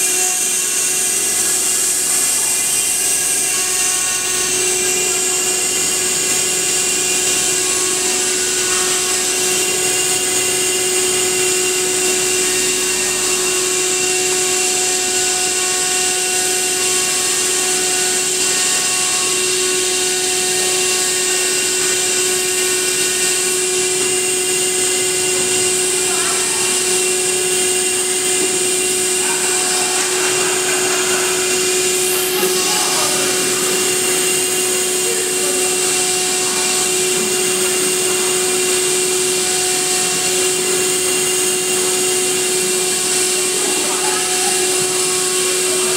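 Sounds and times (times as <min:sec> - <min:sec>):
machining hiss: 0:00.0 - 0:45.9
router spindle whine: 0:00.0 - 0:45.9.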